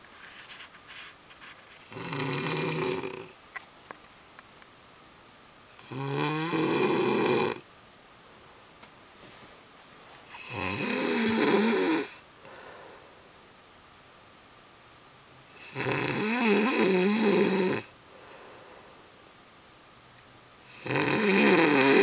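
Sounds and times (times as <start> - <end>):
man snoring: 1.8 - 3.4, 5.7 - 7.6, 10.3 - 12.2, 15.5 - 17.9, 20.7 - 22.0
quiet breathing: 12.2 - 13.4, 17.8 - 19.2.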